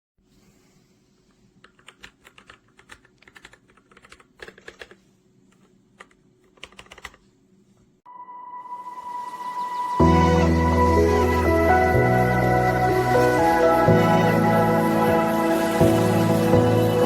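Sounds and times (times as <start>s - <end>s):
typing on mechanical keyboard: 1.6s - 7.2s.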